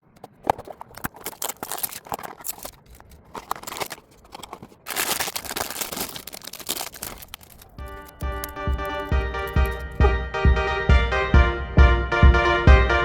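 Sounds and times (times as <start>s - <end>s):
packaging clicks and crinkling: 0.0s - 10.0s
steady rustle: 0.0s - 10.1s.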